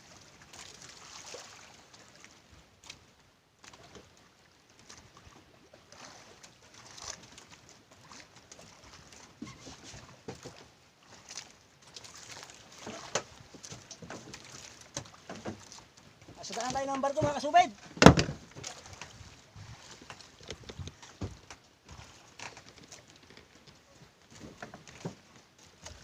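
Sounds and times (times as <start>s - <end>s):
water lapping against boat hull: 0.0s - 26.0s
knocks on boat: 17.1s - 18.7s, 20.4s - 21.4s.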